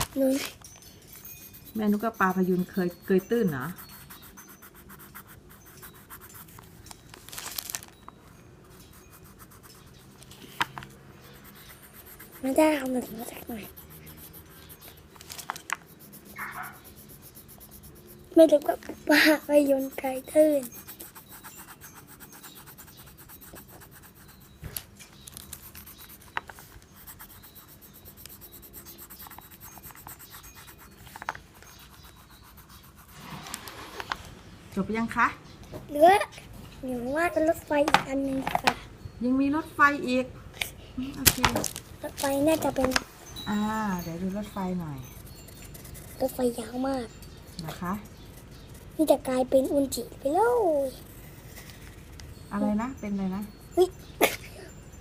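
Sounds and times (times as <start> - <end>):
pencil scratching on paper: 1.1 - 6.8, 8.6 - 24.6, 25.4 - 34.2, 45.0 - 52.2
paper rustling: 7.1 - 8.0.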